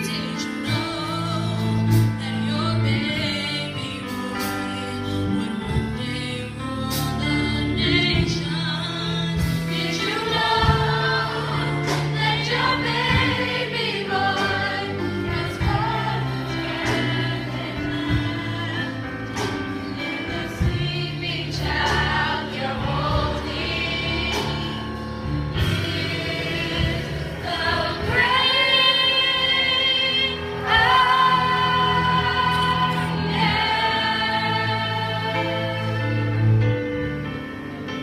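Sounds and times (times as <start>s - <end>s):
choir singing gospel: 0.0s - 37.9s
sustained bass notes: 0.0s - 38.0s.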